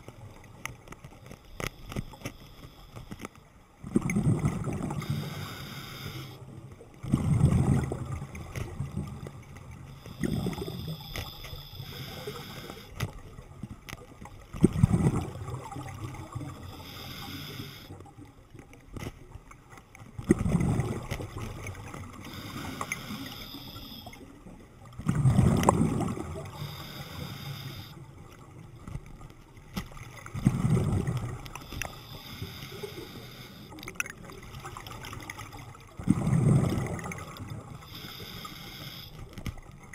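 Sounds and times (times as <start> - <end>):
bubbling exhale underwater: 3.8 - 6.4, 7.0 - 8.8, 10.1 - 11.1, 14.6 - 17.9, 20.3 - 24.4, 25.0 - 28.0, 30.3 - 39.2
regulator inhale hiss: 5.0 - 6.4, 10.0 - 13.0, 16.6 - 18.0, 22.2 - 24.2, 26.4 - 28.0, 31.6 - 33.8, 37.8 - 39.3.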